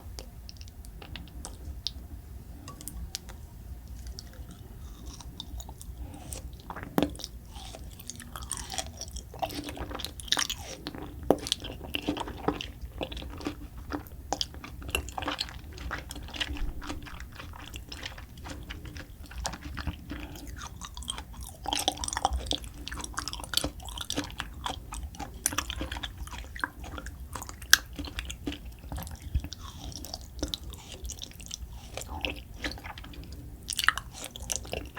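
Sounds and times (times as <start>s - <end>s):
person chewing wetly: 0.0s - 2.0s, 2.7s - 34.9s
crunching food: 3.2s - 34.9s.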